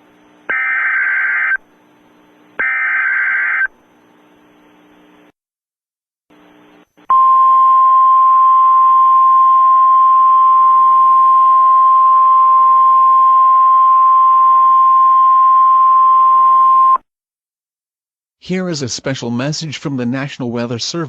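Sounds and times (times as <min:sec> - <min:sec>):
loud high alarm tone: 0:00.5 - 0:01.6, 0:02.6 - 0:03.7.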